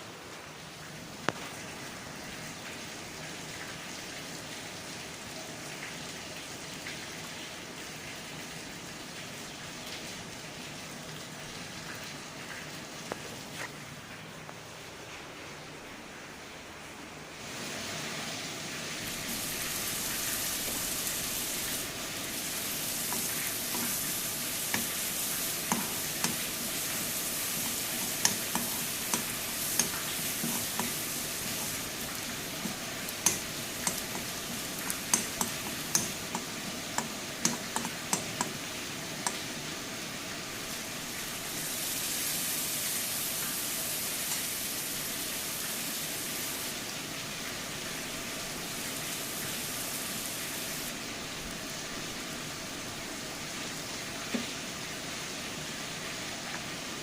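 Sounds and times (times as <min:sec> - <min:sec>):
food sizzling in a pan: 0:17.4 - 0:52.7
spoon scraping a pan: 0:22.7 - 0:38.5.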